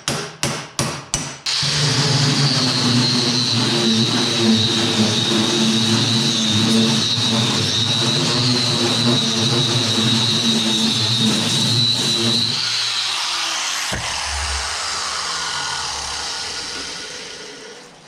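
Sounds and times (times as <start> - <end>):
power tool whining: 1.5 - 18.0.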